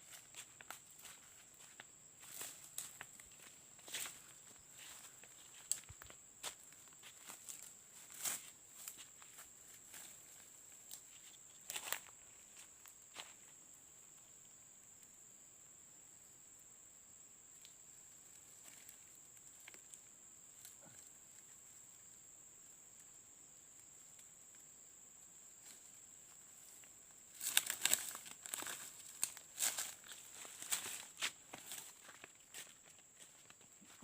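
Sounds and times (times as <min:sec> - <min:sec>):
footsteps crunching through dry undergrowth: 0:00.0 - 0:13.6, 0:27.3 - 0:34.0
faint scattered ticks: 0:00.0 - 0:33.9.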